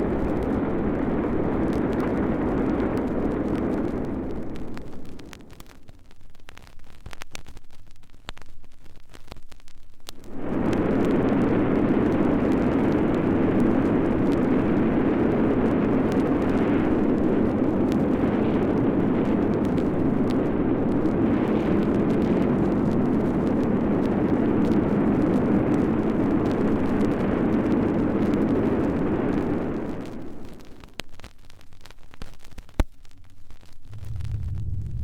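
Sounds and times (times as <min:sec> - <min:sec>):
deep rumbling roar: 0:33.9 - 0:35.0.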